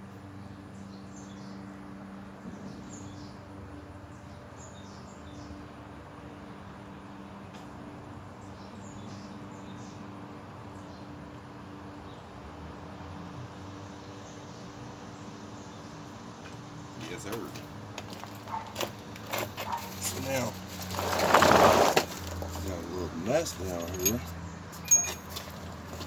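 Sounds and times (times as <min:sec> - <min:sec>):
birds chirping: 0:07.4 - 0:12.4, 0:13.8 - 0:26.0.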